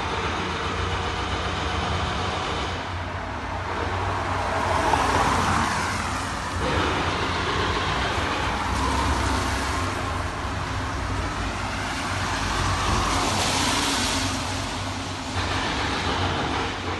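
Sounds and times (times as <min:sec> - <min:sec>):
heavy machinery engine rumble: 0:06.1 - 0:16.9.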